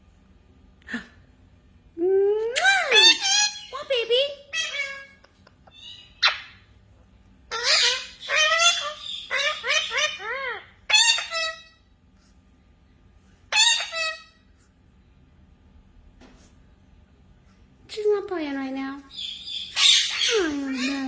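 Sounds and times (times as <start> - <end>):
parrot squawking and chattering: 2.6 - 6.7, 7.5 - 11.9, 13.5 - 14.5, 19.1 - 21.0.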